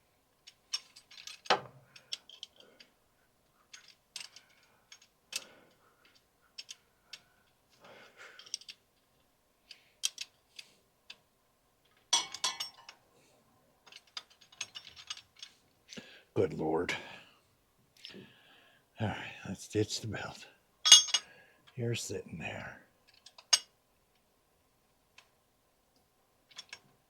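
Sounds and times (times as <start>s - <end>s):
wrench clinking on metal: 12.2s - 13.0s, 20.8s - 21.3s.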